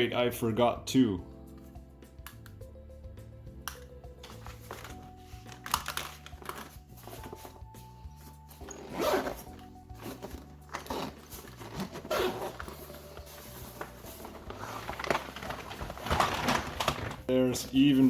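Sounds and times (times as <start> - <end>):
background music: 0.0 - 18.0
zipper being pulled: 8.2 - 17.2.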